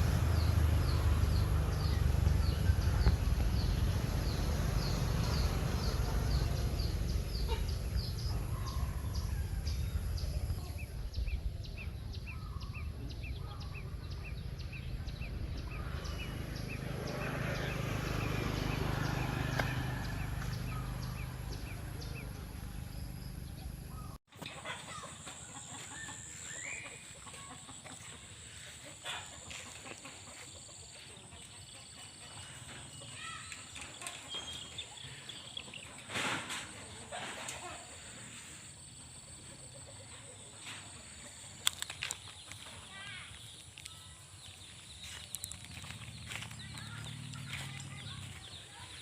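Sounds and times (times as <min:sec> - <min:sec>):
chickens clucking: 0:24.3 - 0:43.0.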